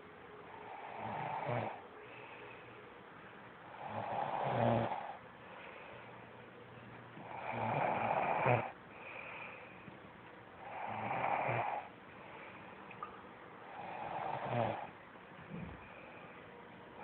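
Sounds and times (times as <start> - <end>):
quiet breathing: 0.0 - 17.0
woman snoring: 0.6 - 1.8, 3.7 - 5.2, 7.2 - 8.8, 10.6 - 11.9, 13.6 - 14.9.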